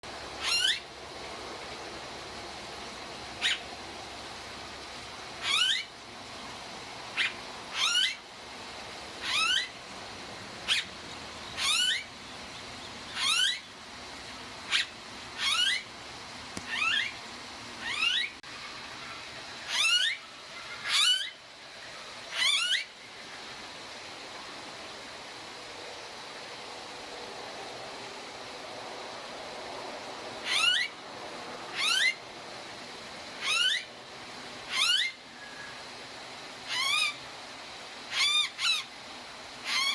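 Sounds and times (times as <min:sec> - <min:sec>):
steady hiss: 0:00.0 - 0:39.9
bird calling with whistled notes: 0:00.4 - 0:00.9, 0:03.4 - 0:03.7, 0:05.4 - 0:05.9, 0:07.1 - 0:08.2, 0:09.2 - 0:09.8, 0:10.6 - 0:13.8, 0:14.7 - 0:15.9, 0:16.6 - 0:17.2, 0:17.8 - 0:21.4, 0:22.3 - 0:23.0, 0:30.4 - 0:31.0, 0:31.7 - 0:32.2, 0:33.4 - 0:33.9, 0:34.7 - 0:35.9, 0:36.7 - 0:37.2, 0:38.1 - 0:38.9, 0:39.6 - 0:39.9.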